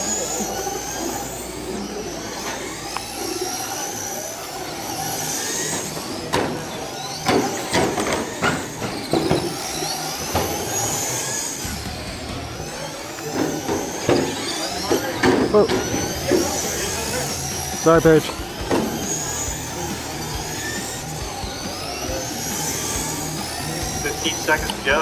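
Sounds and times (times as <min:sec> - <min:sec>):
rc car motors whining: 0:00.0 - 0:25.0.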